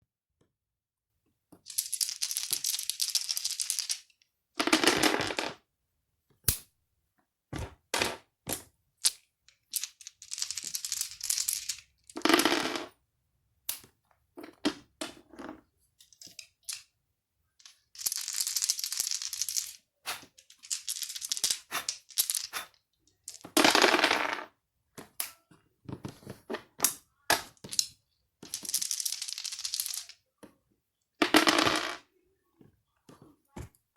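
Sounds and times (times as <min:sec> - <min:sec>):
dice clicks: 0:01.6 - 0:05.6, 0:08.5 - 0:12.9, 0:17.6 - 0:24.5, 0:26.8 - 0:30.2, 0:31.2 - 0:32.0
dice rattling: 0:01.6 - 0:05.6, 0:09.0 - 0:12.9, 0:16.1 - 0:16.9, 0:17.6 - 0:24.5, 0:26.8 - 0:30.2, 0:31.2 - 0:32.1.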